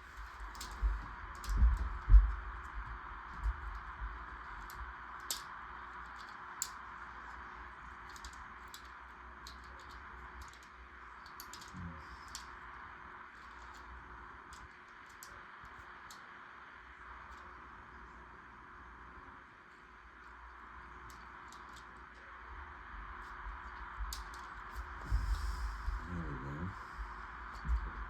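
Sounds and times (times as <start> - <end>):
plastic bricks clicking together: 0.5 - 0.8, 4.6 - 7.4, 8.0 - 12.6.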